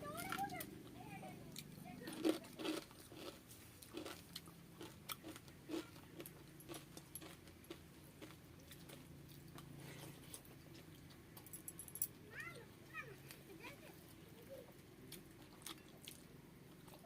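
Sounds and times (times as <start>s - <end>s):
crunchy bites and chewing: 1.6s - 11.2s, 15.1s - 17.0s.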